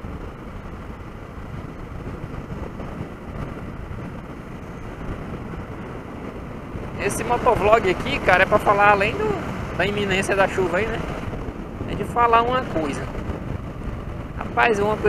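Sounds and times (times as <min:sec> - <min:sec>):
motorcycle engine running: 0:00.0 - 0:09.9
road and wind noise: 0:00.0 - 0:15.0.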